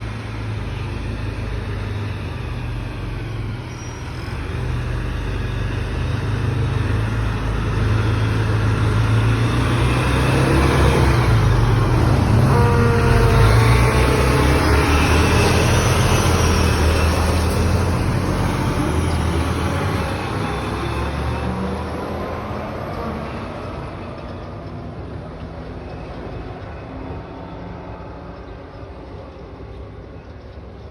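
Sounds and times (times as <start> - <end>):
truck diesel engine passing: 0.0 - 30.9
truck horn note: 10.7 - 16.2.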